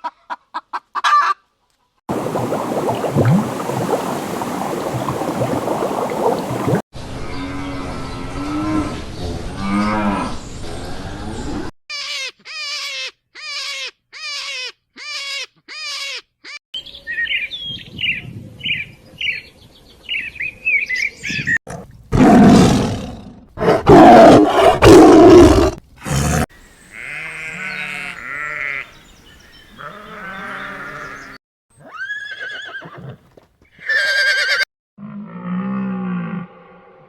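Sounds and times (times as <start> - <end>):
bird chirps: 16.8 - 21.6.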